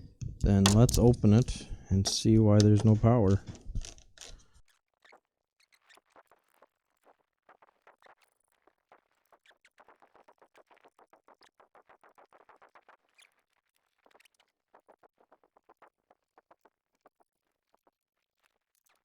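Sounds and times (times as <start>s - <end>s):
plastic radio ticks and taps: 0.2s - 4.5s.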